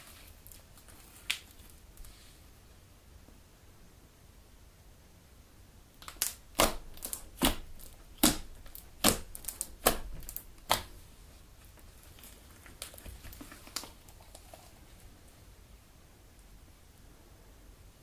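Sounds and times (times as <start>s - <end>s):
slime popping and clicking: 6.0s - 10.9s.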